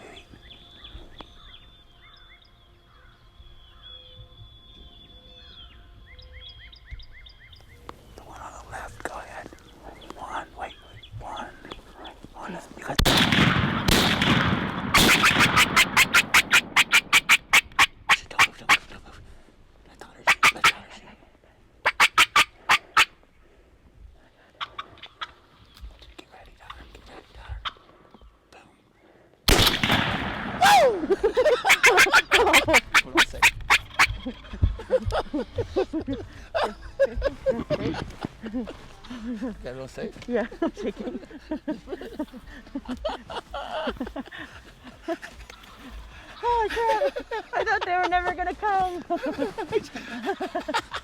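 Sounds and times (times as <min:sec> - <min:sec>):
shotgun blasts with echo: 0:13.0 - 0:17.6, 0:29.5 - 0:31.0
wings flapping: 0:15.0 - 0:18.8, 0:31.4 - 0:34.2
short turkey calls: 0:15.0 - 0:18.9, 0:20.2 - 0:20.9, 0:21.8 - 0:23.2, 0:24.6 - 0:25.6, 0:27.6 - 0:28.3, 0:30.6 - 0:34.5
turkey wingbeats flopping on ground: 0:31.2 - 0:34.4.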